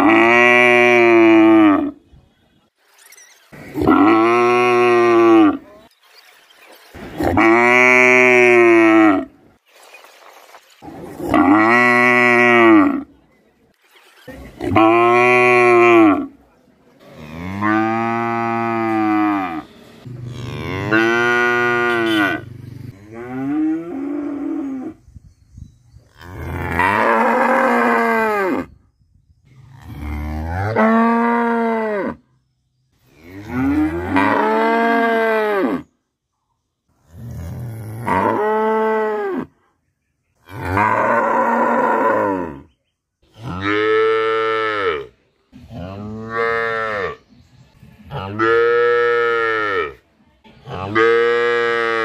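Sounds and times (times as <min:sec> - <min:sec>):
cow mooing: 0:20.3 - 0:22.4.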